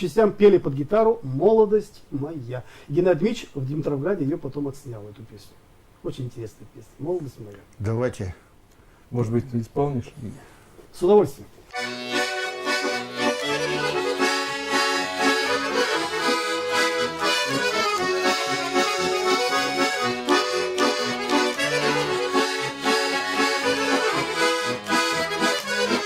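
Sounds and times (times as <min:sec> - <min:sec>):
button accordion melody: 0:11.7 - 0:26.0.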